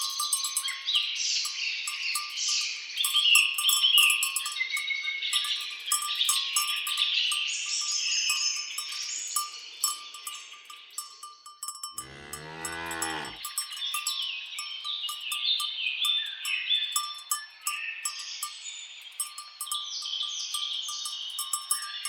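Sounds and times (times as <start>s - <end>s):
birds singing: 0.0s - 11.4s, 12.0s - 22.0s
patter of light ticks: 0.0s - 22.0s
cow mooing: 12.0s - 13.4s.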